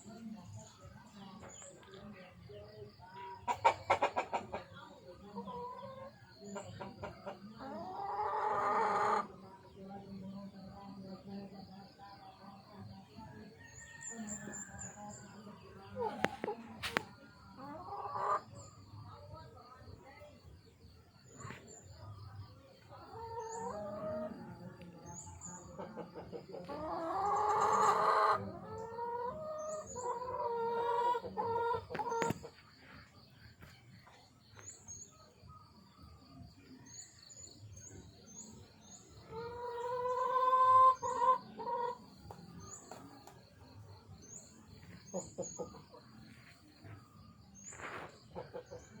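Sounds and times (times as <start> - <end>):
clucking calls: 3.4 - 4.8, 23.0 - 32.9, 39.0 - 43.4.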